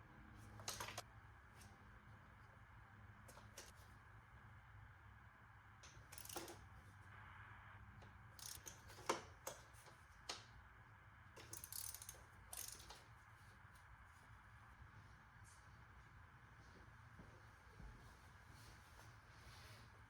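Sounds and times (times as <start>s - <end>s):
ratchet wrench clicking: 5.8s - 6.6s, 8.4s - 9.6s, 11.4s - 13.0s.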